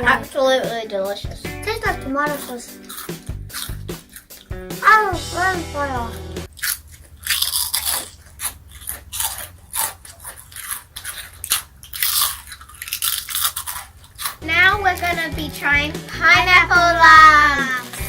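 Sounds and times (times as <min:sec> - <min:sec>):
chips being chewed: 0:02.2 - 0:04.6, 0:06.1 - 0:14.4.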